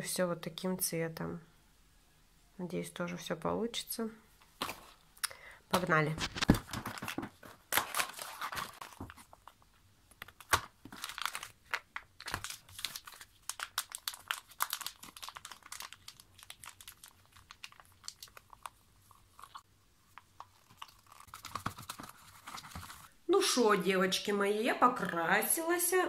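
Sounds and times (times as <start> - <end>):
packaging crinkling: 6.2 - 23.1.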